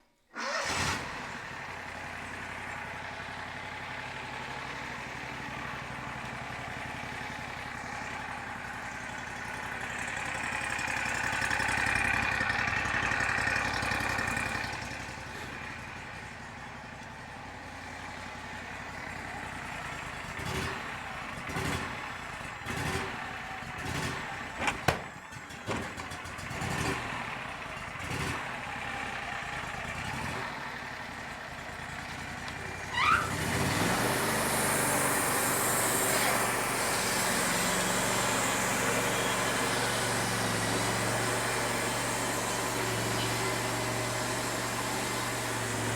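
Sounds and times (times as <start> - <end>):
engine running: 0.4 - 45.9
knocks and thuds: 24.6 - 26.0.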